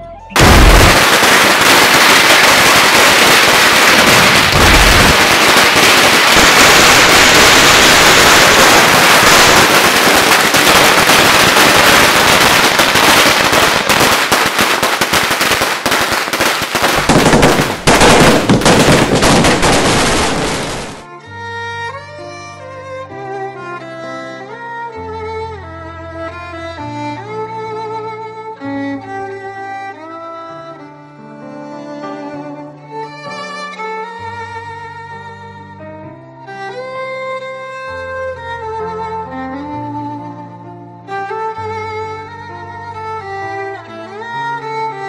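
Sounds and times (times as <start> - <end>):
loud firecracker bangs: 0.4 - 21.0
firecrackers crackling: 0.4 - 21.1.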